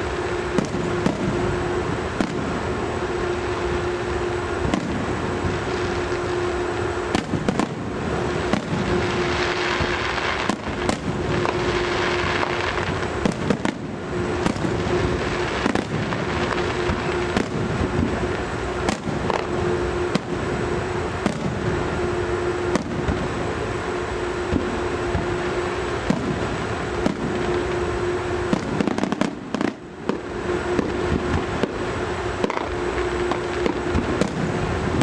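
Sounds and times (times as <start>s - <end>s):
fireworks bangs and crackling: 0.0s - 35.0s
low hum: 0.0s - 35.0s.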